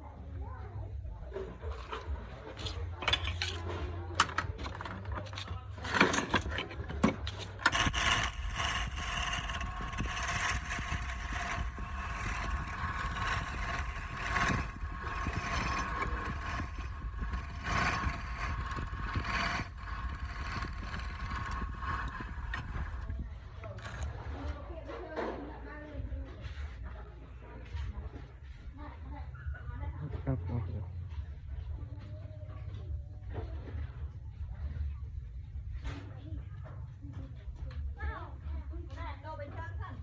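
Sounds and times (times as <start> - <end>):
electric motor whining: 7.7 - 23.1.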